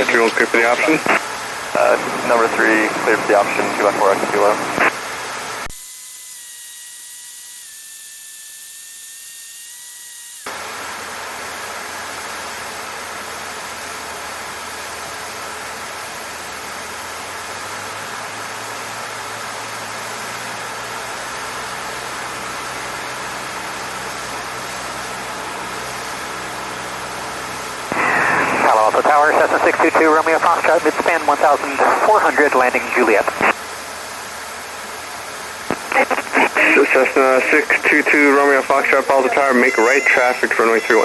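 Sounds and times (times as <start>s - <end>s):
headset hiss: 0.0s - 1.2s, 1.8s - 4.9s, 27.9s - 33.5s, 35.6s - 41.0s
faint whines: 0.0s - 5.0s, 27.9s - 33.6s, 35.6s - 41.0s
aircraft engine drone: 0.0s - 5.6s, 10.5s - 41.0s.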